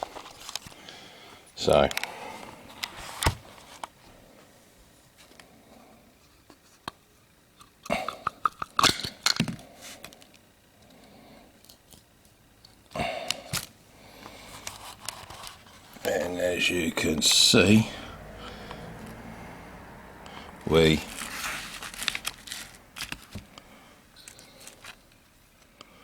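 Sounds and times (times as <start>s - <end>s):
parts being handled: 7.6s - 10.5s, 11.6s - 17.8s, 20.2s - 25.8s.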